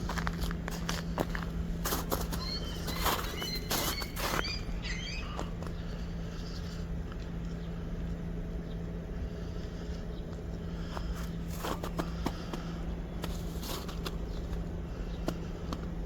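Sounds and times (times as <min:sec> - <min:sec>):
footsteps crunching in snow: 0:00.0 - 0:06.1, 0:10.8 - 0:15.8
steady low hum: 0:00.0 - 0:16.0
small birds chirping: 0:01.0 - 0:16.0.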